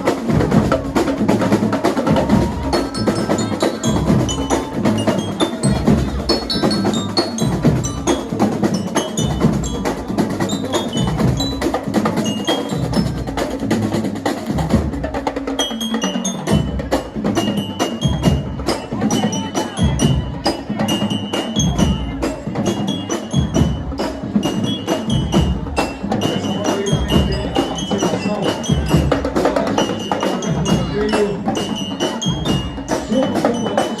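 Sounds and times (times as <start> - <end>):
bass and snare drums: 0.0 - 15.6, 23.4 - 33.6
marching band playing: 0.0 - 34.0
bell-lyre melody: 0.5 - 13.7.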